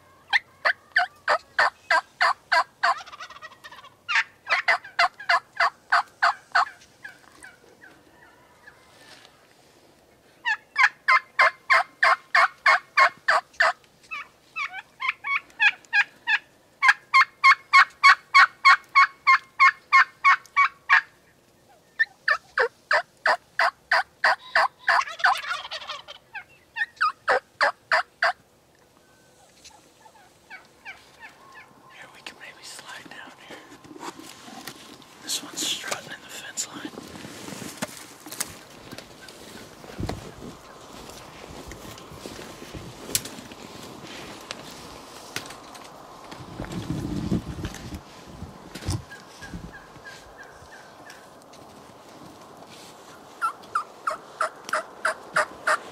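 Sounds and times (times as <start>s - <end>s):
turkey yelping: 0.0s - 8.8s, 10.4s - 21.1s, 21.7s - 28.4s, 53.4s - 55.8s.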